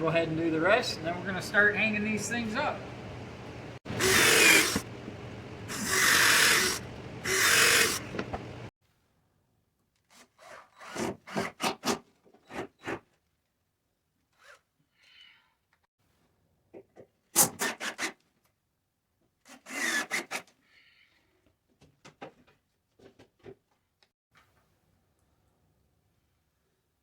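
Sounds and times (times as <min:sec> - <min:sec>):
low hum: 0:02.7 - 0:08.7
tool rasping plywood: 0:03.9 - 0:04.9, 0:05.7 - 0:08.4.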